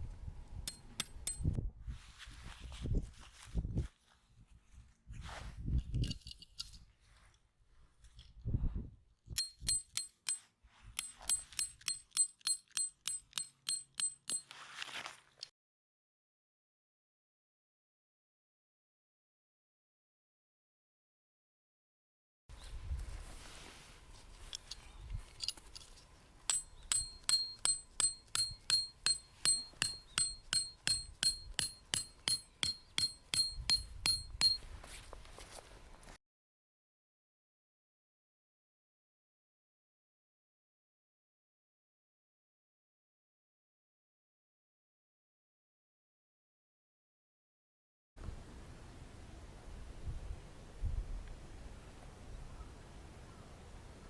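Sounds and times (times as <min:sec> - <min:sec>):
hammer striking metal tent peg: 0:00.6 - 0:01.6, 0:09.4 - 0:14.6, 0:26.5 - 0:34.7
soft rustle: 0:01.8 - 0:08.6, 0:14.5 - 0:15.5, 0:22.5 - 0:26.5, 0:34.6 - 0:36.2
small mechanism clicking metallically: 0:11.0 - 0:14.5, 0:24.5 - 0:34.6.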